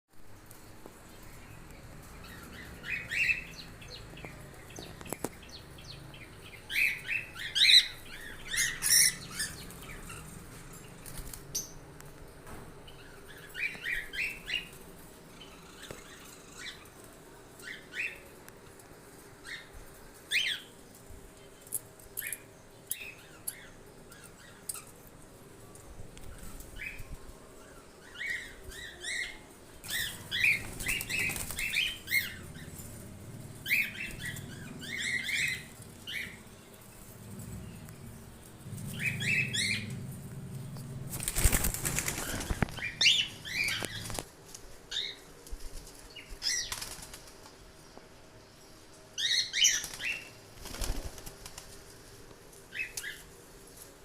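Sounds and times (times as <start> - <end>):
wings flapping: 29.9 - 33.0, 41.0 - 44.6, 45.4 - 47.6, 49.7 - 52.1.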